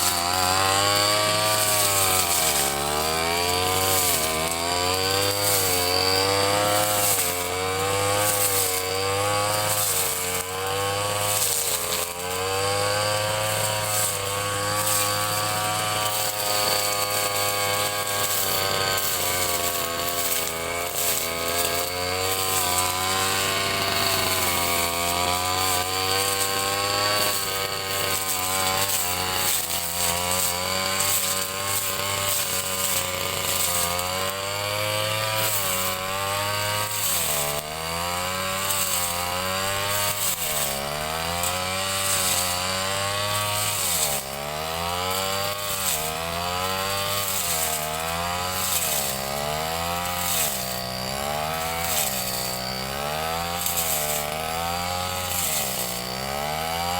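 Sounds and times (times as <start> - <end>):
brush cutter engine at high revs: 0.0 - 56.9.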